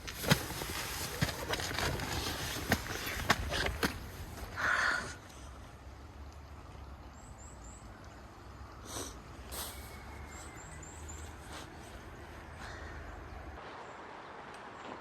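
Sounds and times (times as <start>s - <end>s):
rustling: 0.0s - 4.1s
small birds chirping: 7.0s - 14.4s.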